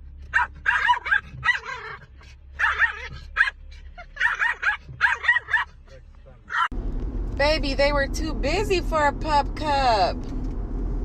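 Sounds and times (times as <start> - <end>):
dog barking and yipping: 0.2 - 5.8, 6.5 - 6.7.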